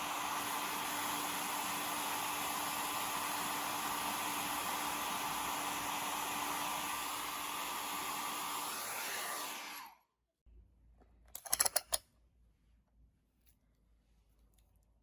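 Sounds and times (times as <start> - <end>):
heat gun blowing: 0.0 - 10.0.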